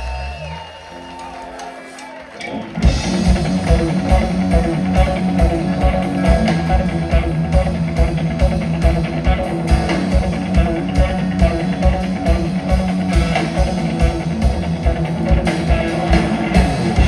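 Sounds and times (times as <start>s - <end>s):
bass guitar: 0.0s - 17.0s
drum kit: 0.0s - 17.0s
electric guitar: 0.0s - 17.0s.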